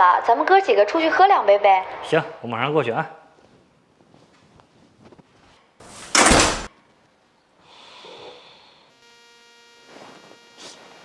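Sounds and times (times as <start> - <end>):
faint rustle: 3.4 - 6.2
door banging shut: 5.9 - 6.7
electrical hum: 8.6 - 11.0.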